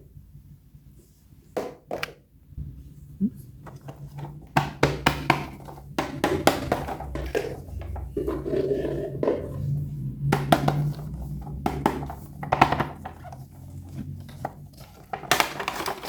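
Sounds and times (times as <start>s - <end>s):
plastic toys tapping and clicking: 3.6s - 16.0s.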